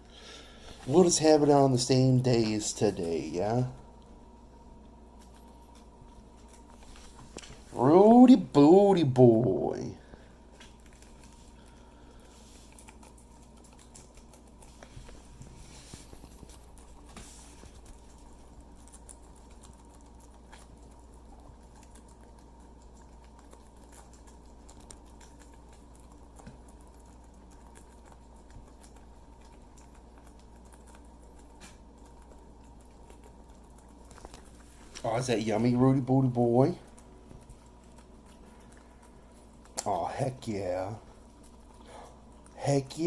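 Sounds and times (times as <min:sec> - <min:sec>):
guinea pigs eating: 0:00.0 - 0:43.0.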